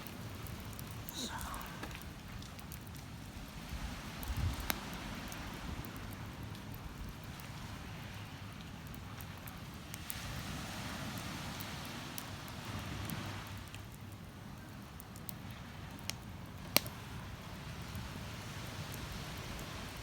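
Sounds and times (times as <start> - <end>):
bonfire crackling and popping: 0.0 - 20.0
ocean waves on the shore: 9.7 - 13.9, 16.9 - 20.0.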